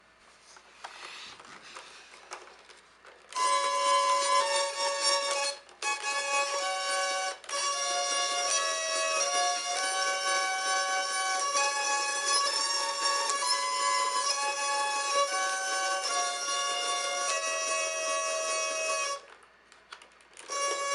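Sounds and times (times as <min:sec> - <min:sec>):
handling noise and clicks: 0:00.6 - 0:03.4, 0:19.3 - 0:20.7
hurdy-gurdy buzzing drone: 0:03.3 - 0:19.3, 0:20.4 - 0:20.9
hurdy-gurdy melody string: 0:03.3 - 0:19.4, 0:20.4 - 0:20.9.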